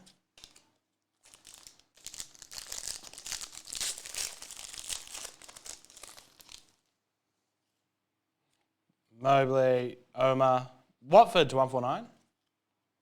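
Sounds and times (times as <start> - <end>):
card pack wrapper crinkling: 0.0 - 6.9.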